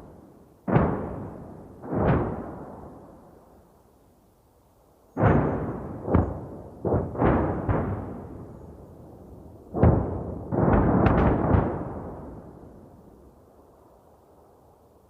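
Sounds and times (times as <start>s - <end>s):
distant artillery explosions: 0.0s - 3.6s, 5.1s - 13.2s.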